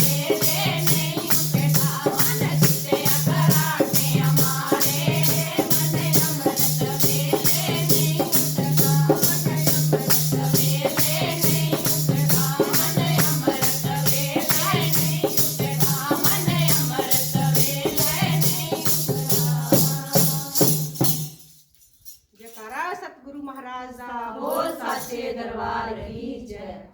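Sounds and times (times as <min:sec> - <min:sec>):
fast percussion beat: 0:00.0 - 0:21.6.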